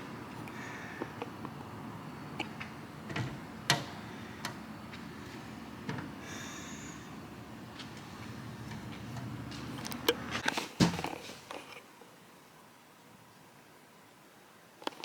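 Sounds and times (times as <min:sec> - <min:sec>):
low background noise: 0:00.0 - 0:15.0
light clicks and knocks: 0:02.4 - 0:06.2, 0:07.7 - 0:11.6.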